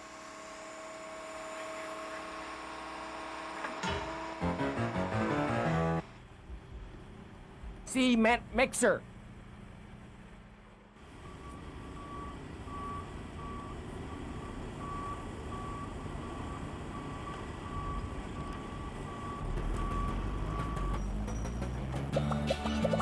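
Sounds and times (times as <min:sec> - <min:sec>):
reversing alarm beeping: 0:11.2 - 0:22.1
truck engine running: 0:19.4 - 0:23.0.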